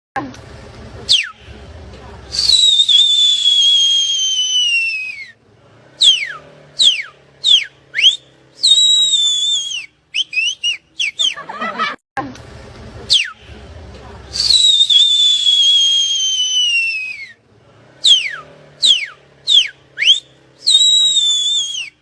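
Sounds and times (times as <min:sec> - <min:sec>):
high whistling: 0:01.1 - 0:01.4, 0:02.3 - 0:05.4, 0:06.0 - 0:11.5, 0:13.1 - 0:13.4, 0:14.3 - 0:17.4, 0:18.0 - 0:22.0.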